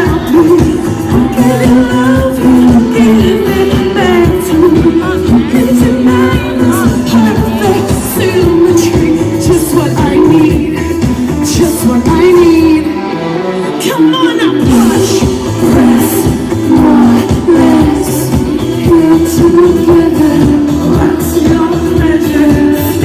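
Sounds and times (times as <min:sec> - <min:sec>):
band playing loudly: 0:00.0 - 0:23.0
woman singing: 0:00.0 - 0:23.0.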